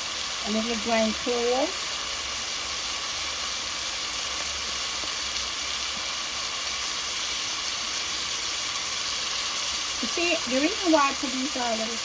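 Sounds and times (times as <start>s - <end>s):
liver and onion sizzling in a pan: 0.0s - 12.0s.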